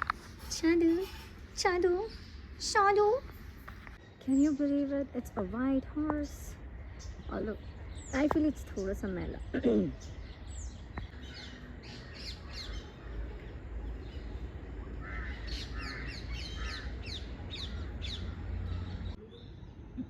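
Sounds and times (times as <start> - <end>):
birds chirping: 0.0 - 20.0
harsh bird calls: 6.8 - 20.0.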